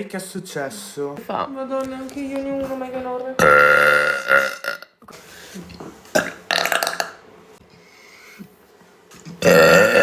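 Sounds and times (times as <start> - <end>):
woman belching: 3.4 - 4.9, 6.2 - 7.1, 9.4 - 10.0.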